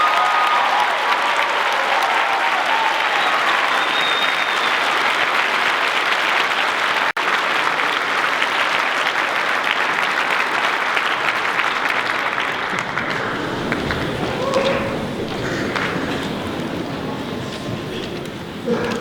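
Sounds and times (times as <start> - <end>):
audience applauding: 0.0 - 19.0.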